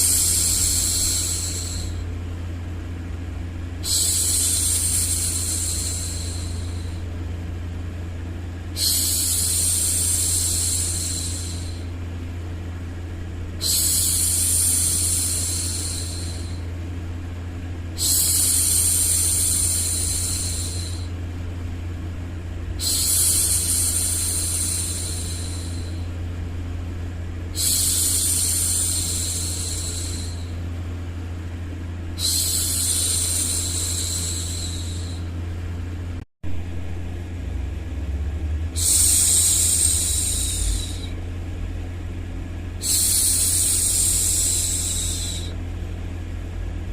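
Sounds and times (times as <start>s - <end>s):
low white-noise hum: 0.0s - 46.9s
woman shushing: 8.8s - 11.9s, 13.6s - 16.6s, 32.2s - 35.3s, 38.8s - 41.2s, 42.8s - 45.6s.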